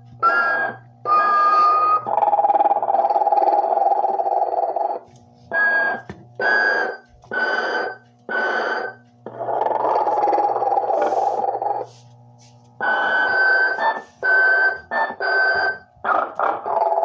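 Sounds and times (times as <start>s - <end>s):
low electric hum: 0.0s - 17.0s
rattling snore: 9.4s - 11.9s.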